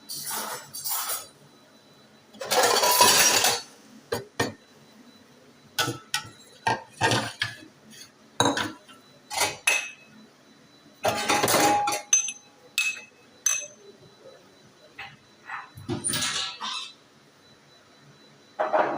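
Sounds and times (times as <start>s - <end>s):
objects clattering: 11.0s - 13.7s, 15.5s - 16.9s, 18.6s - 18.9s.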